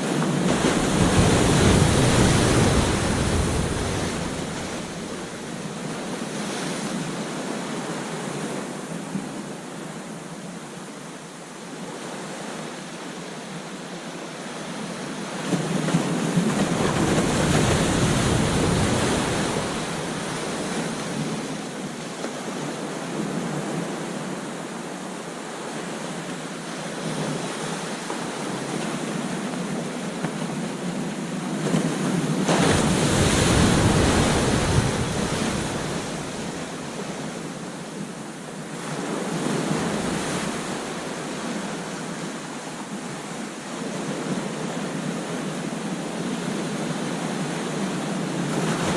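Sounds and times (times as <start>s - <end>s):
wind on microphone: 0.0s - 8.5s, 15.5s - 22.1s, 28.5s - 43.2s
waves breaking on a beach: 0.0s - 48.9s.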